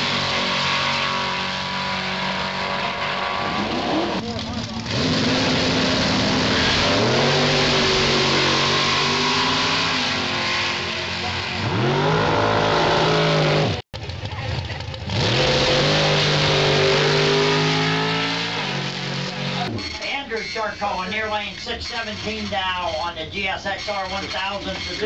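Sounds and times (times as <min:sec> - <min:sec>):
drag racing engines at full throttle: 0:00.0 - 0:25.0.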